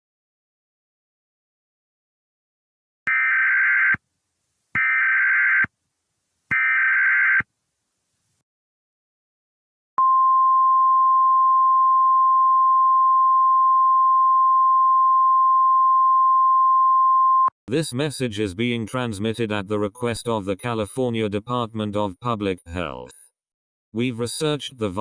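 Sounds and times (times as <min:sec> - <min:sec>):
steady single-pitch attention tone: 0:10.0 - 0:17.5.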